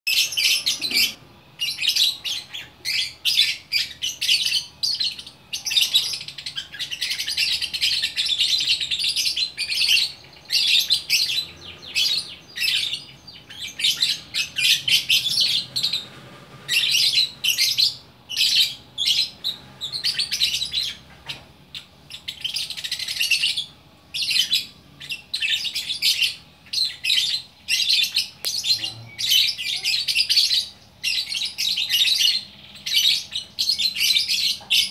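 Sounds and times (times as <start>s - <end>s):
lovebird chattering: 0.1s - 16.1s.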